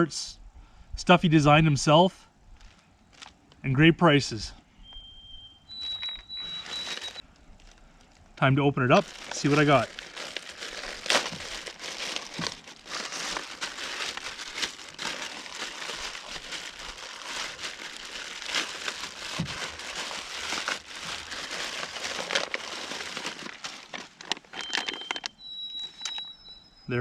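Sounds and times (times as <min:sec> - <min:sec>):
packaging crinkling: 0:05.8 - 0:08.3, 0:08.9 - 0:25.4.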